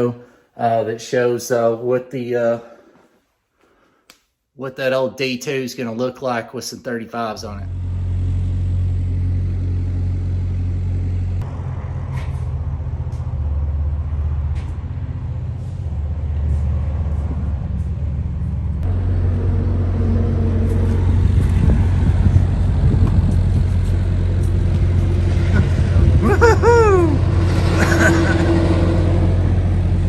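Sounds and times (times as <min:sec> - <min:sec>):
vehicle engine humming: 0:07.6 - 0:30.0.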